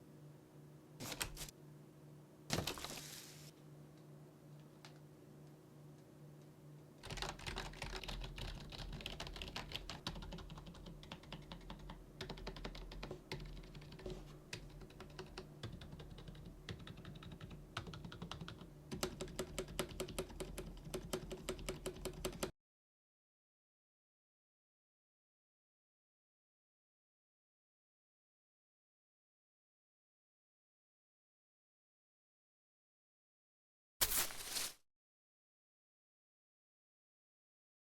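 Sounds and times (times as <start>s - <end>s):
typing on a keyboard: 7.0s - 22.5s.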